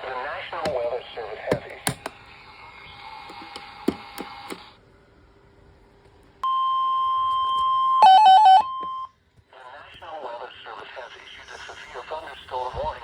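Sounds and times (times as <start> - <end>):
faint radio static: 0.0 - 4.8, 9.4 - 13.0
two-pitch alarm beeping: 6.4 - 9.1.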